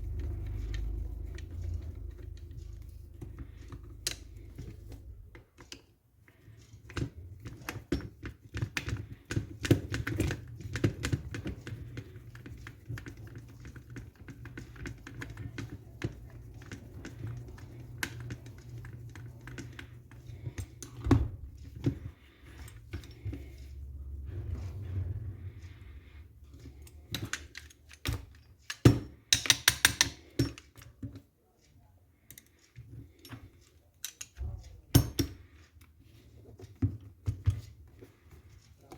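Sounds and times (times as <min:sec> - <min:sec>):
steady low hum: 0:00.0 - 0:05.4, 0:10.3 - 0:28.5
small parts and tools clicking: 0:00.0 - 0:24.8, 0:26.5 - 0:38.9.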